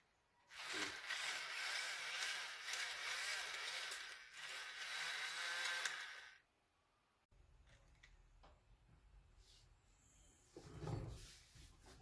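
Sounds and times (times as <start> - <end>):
toy truck motor whirring and scraping: 0.5 - 6.4.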